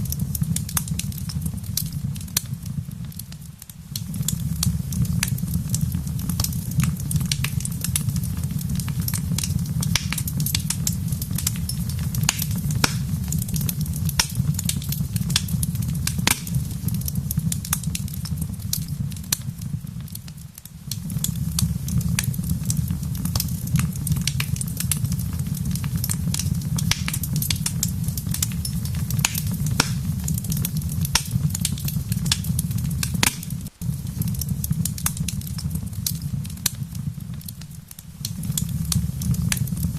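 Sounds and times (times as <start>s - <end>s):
wood fire crackling and popping: 0.0s - 39.9s
low rumble: 4.1s - 19.6s.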